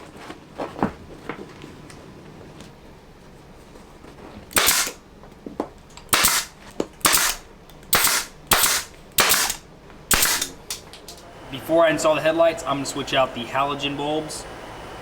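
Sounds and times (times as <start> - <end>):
staple gun firing: 4.5 - 5.0, 6.0 - 11.2.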